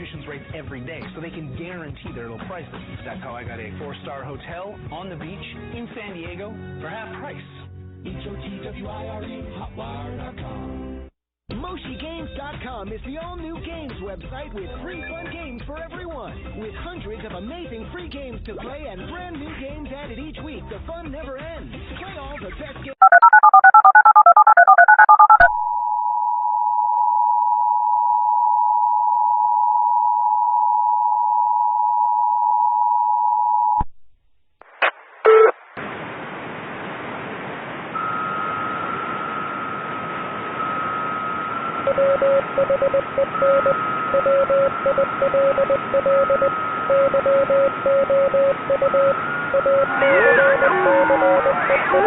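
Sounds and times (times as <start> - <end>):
telephone touch-tones: 23.0 - 25.7
short beeps: 23.0 - 25.8, 40.6 - 52.0
low tone beeping on and off: 23.0 - 33.8, 38.0 - 40.0, 40.6 - 52.0
steady high tone: 41.8 - 52.0.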